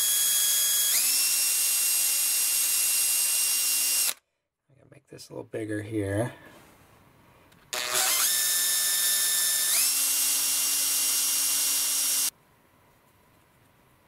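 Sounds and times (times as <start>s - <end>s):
electric drill whining: 0.0s - 4.2s, 7.7s - 12.3s.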